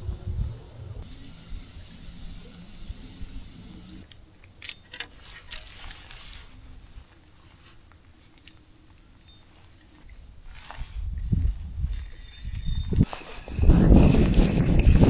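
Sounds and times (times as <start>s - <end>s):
wind rumble on microphone: 0.0s - 1.2s, 10.2s - 15.0s
fishing reel clicks and line rustles: 4.0s - 6.6s, 8.2s - 13.7s.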